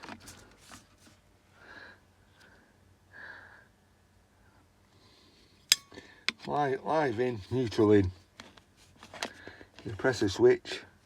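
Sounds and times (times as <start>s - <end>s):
soft breaths through nose: 4.4s - 6.3s.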